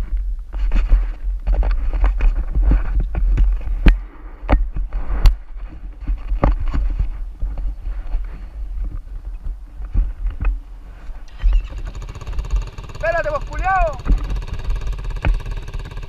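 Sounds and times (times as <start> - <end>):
sharp knocks and rattles: 11.4 - 16.0.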